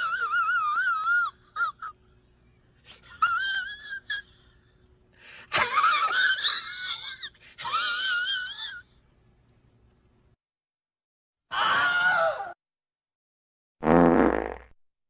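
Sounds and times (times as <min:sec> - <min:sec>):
high-pitched wheezing laugh: 0:05.4 - 0:08.9.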